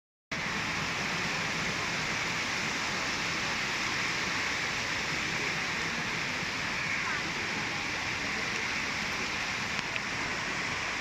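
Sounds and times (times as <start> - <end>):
sea surf washing on beach: 0.3 - 11.0.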